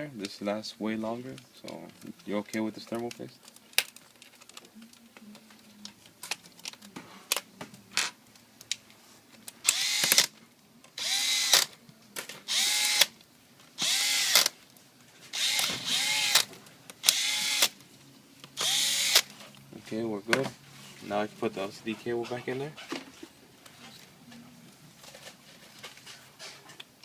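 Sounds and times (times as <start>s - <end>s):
electric drill driving screws: 9.6s - 10.3s, 11.0s - 11.8s, 12.5s - 13.1s, 13.8s - 14.6s, 15.3s - 17.8s, 18.6s - 19.3s.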